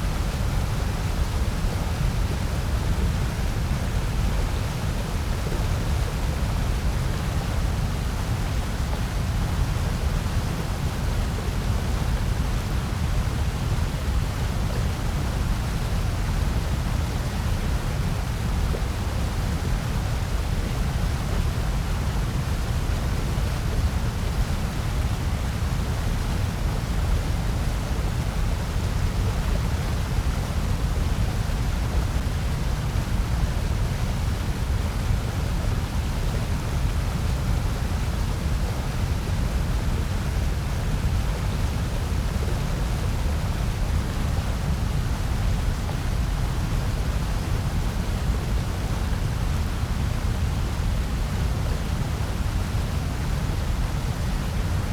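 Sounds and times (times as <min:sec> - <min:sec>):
bass-heavy white noise: 0:00.0 - 0:54.9.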